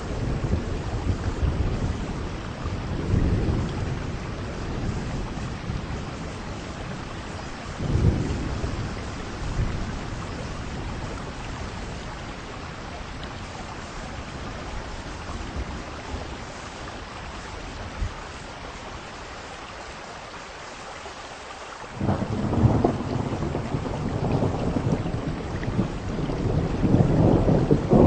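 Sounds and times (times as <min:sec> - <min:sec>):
deep thunder rumbles: 0:00.0 - 0:16.6, 0:22.0 - 0:28.0
heavy rain: 0:00.0 - 0:28.0
wind: 0:00.0 - 0:28.0.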